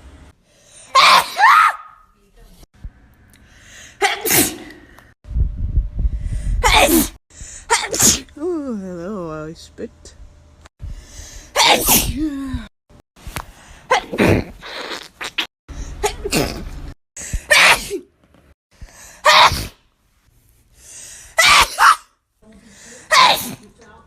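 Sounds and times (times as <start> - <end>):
person sneezing: 4.0 - 4.8, 11.6 - 12.2, 19.2 - 19.8.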